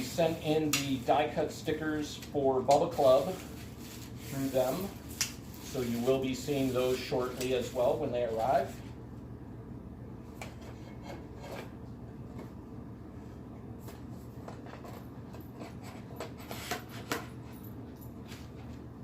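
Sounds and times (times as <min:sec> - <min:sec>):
low room hum: 0:00.0 - 0:19.0
packaging rubbing and scraping: 0:03.0 - 0:08.0.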